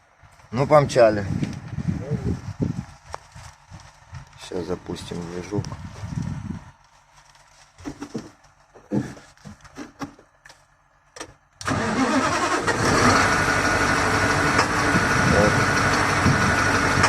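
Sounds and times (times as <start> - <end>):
truck diesel engine running: 11.6 - 17.0.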